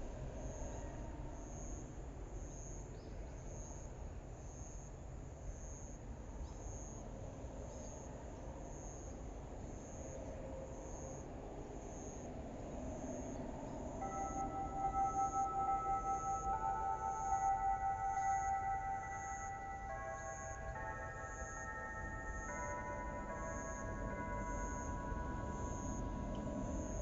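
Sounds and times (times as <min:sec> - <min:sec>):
high-pitched insect chirp: 0:14.0 - 0:27.0.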